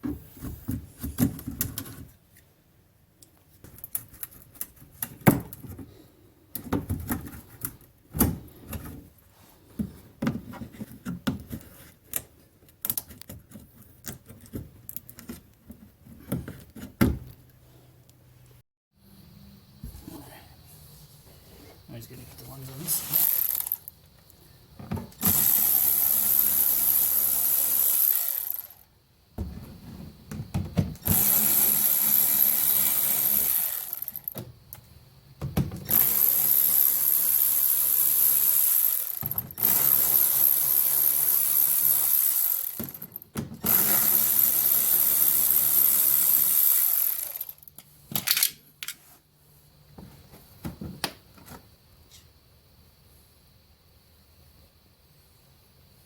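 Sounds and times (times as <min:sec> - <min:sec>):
power drill running: 0:23.1 - 0:23.9, 0:25.2 - 0:28.8, 0:31.0 - 0:34.3, 0:35.9 - 0:47.6.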